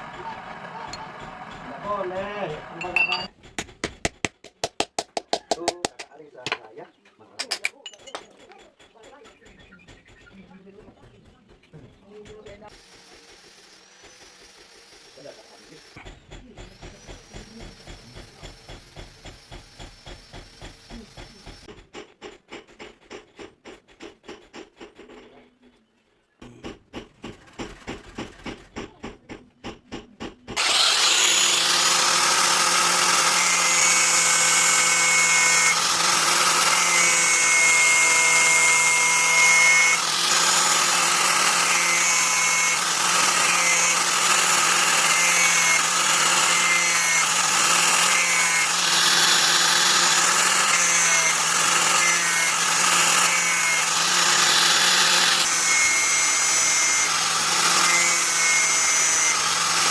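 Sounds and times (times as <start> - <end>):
power tool whining: 0.0 - 3.3, 12.7 - 16.0, 30.6 - 59.9.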